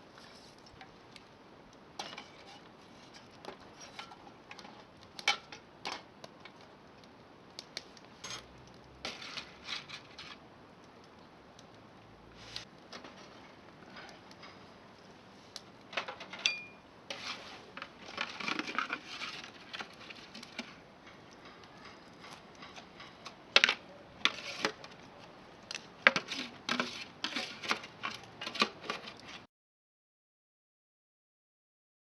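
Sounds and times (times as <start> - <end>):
short ringing clink: 16.4 - 16.8.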